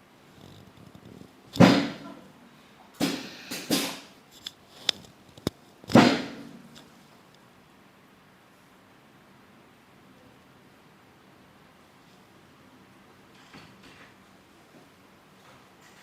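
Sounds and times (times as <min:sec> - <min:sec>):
sharp thuds and cracks: 0:01.5 - 0:02.0, 0:05.4 - 0:06.5.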